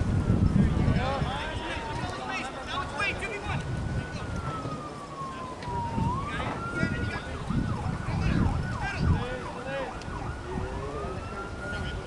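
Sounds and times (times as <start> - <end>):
emergency siren wailing and yelping: 0.0 - 12.0.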